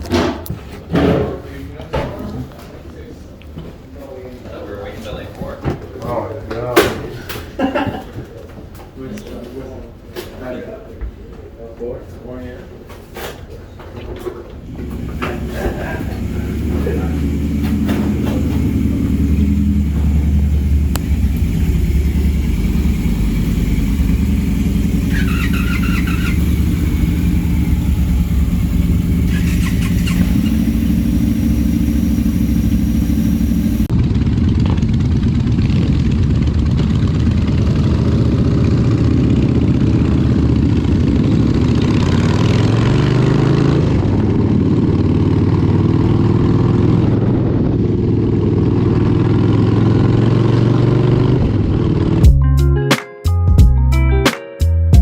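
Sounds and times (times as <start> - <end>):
motorcycle engine running: 14.6 - 52.4.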